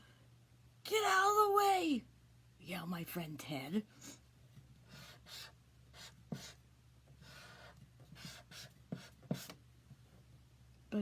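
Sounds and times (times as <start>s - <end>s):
pen scratching on paper: 4.9s - 6.6s, 7.2s - 9.6s.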